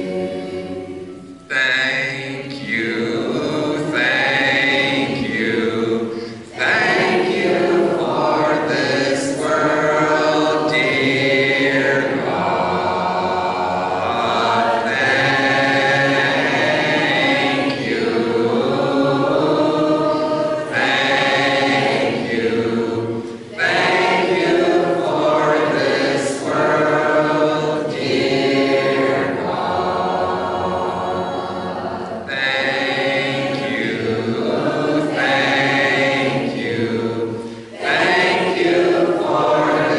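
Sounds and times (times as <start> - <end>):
congregation singing a hymn: 0.0 - 39.9
singers breathing: 6.1 - 6.5, 37.4 - 37.8.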